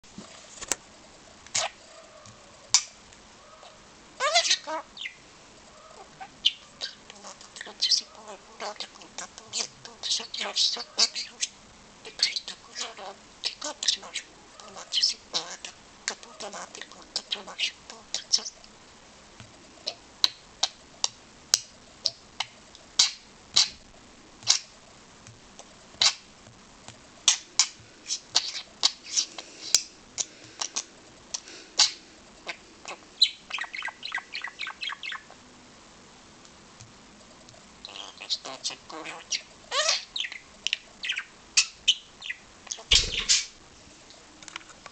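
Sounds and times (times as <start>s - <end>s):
budgerigar squawking and chattering: 3.5s - 5.2s, 5.8s - 18.6s, 27.3s - 29.9s, 37.8s - 43.6s.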